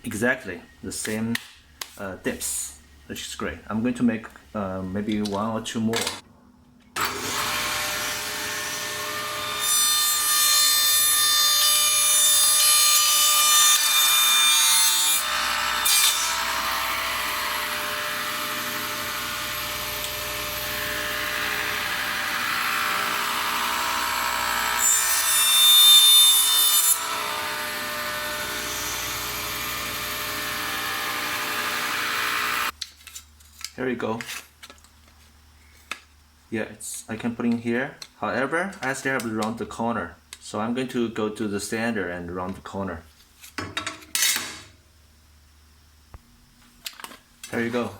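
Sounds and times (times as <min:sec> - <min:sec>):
table saw motor hum: 0:07.0 - 0:12.8, 0:13.8 - 0:32.7
saw cutting wood: 0:07.0 - 0:32.7.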